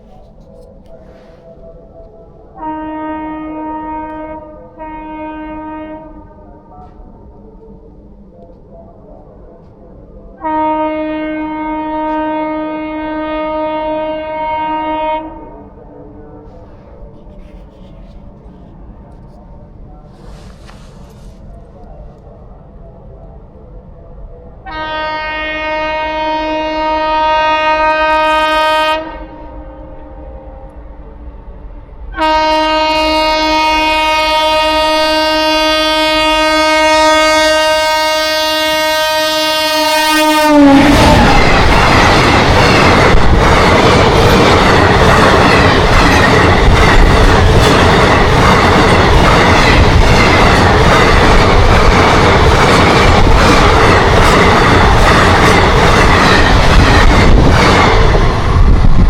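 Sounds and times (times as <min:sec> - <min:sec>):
train horn blast: 0:02.6 - 0:07.0, 0:10.4 - 0:15.7, 0:24.6 - 0:31.0, 0:31.7 - 0:41.8
train wheels clattering: 0:40.8 - 0:59.0.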